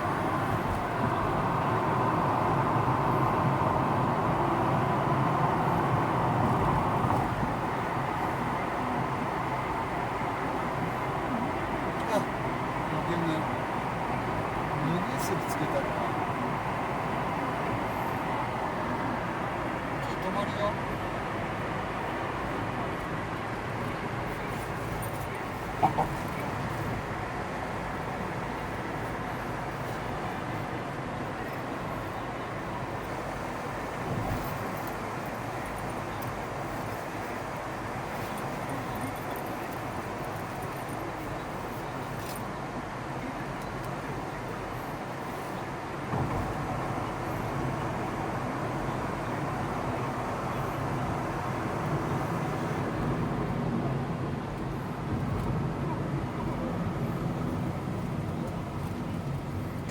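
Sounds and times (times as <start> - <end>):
vehicle and road noise: 0.0 - 59.9.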